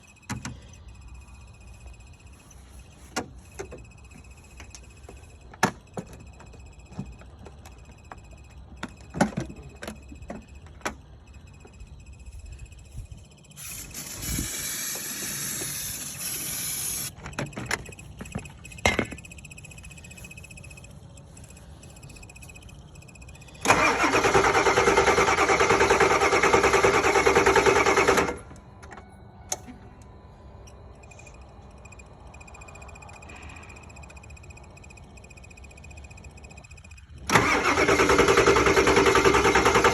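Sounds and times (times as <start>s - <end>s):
starter cranking engine: 13.6s - 17.1s, 22.3s - 28.5s, 36.8s - 39.9s.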